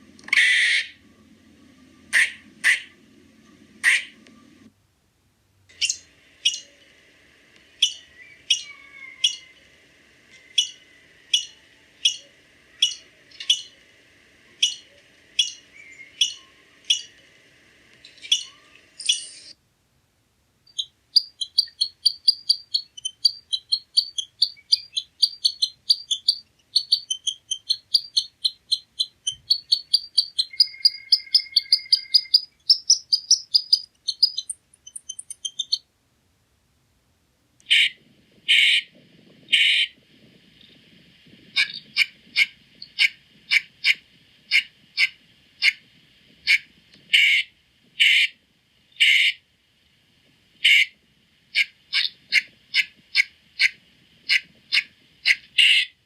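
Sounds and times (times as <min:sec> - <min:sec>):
faint steady hum: 0:00.0 - 0:56.0
squirrel chirps: 0:05.8 - 0:06.7, 0:07.8 - 0:09.6, 0:10.5 - 0:13.8, 0:14.6 - 0:17.2, 0:18.0 - 0:19.6, 0:20.7 - 0:35.9
squirrel chattering: 0:07.8 - 0:09.6, 0:10.5 - 0:13.8, 0:14.6 - 0:15.6, 0:16.2 - 0:17.1, 0:20.7 - 0:35.8.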